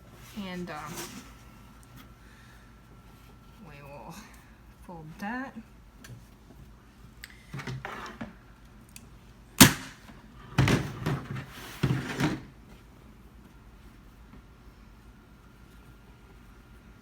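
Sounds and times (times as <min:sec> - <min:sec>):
staple gun shot: 0:09.6 - 0:10.0.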